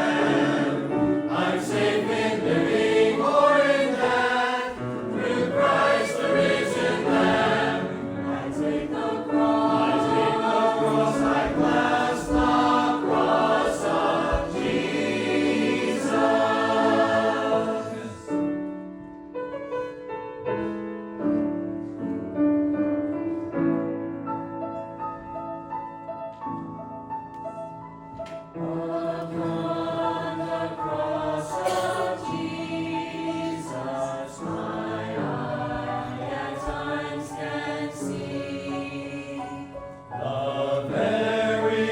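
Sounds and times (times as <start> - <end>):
choir singing a hymn: 0.0 - 18.8, 28.5 - 41.9.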